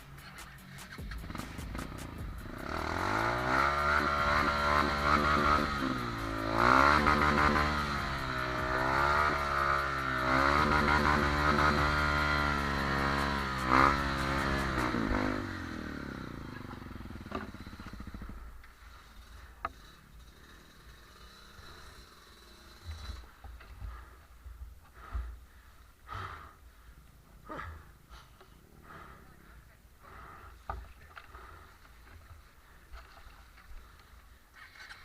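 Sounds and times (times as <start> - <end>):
motorcycle engine revving: 0.0 - 24.1.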